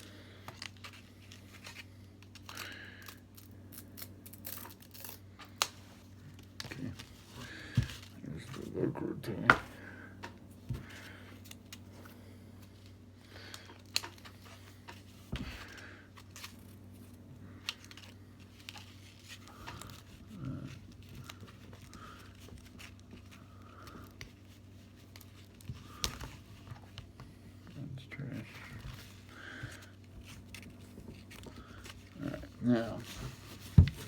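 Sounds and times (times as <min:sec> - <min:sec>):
faint low hum: 0:00.0 - 0:34.0
velcro tearing and clicking: 0:03.1 - 0:05.2.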